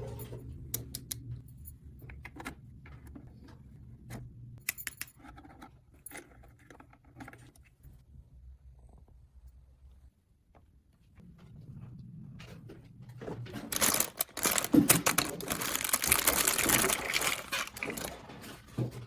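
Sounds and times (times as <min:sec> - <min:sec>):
small hard objects rattling: 0:13.6 - 0:18.6.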